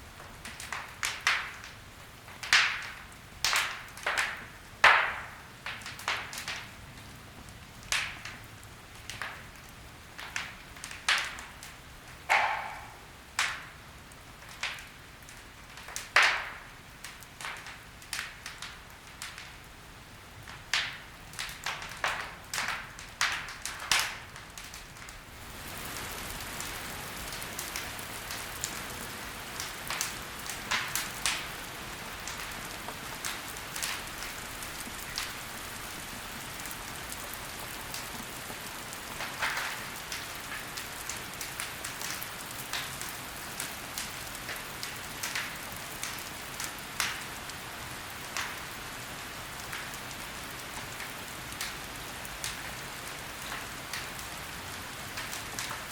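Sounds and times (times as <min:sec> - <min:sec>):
wood fire crackling and popping: 0:00.0 - 0:55.9
fire hissing: 0:25.3 - 0:47.8.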